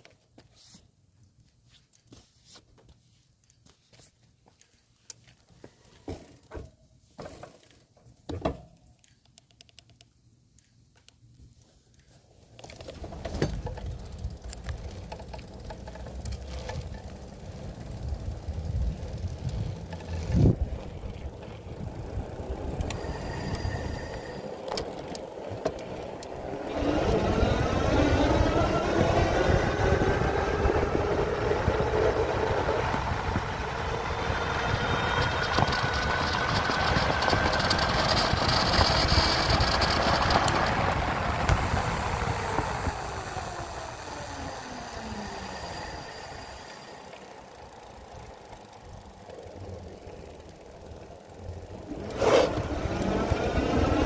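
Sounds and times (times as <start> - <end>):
car engine whine: 12.8 - 54.0.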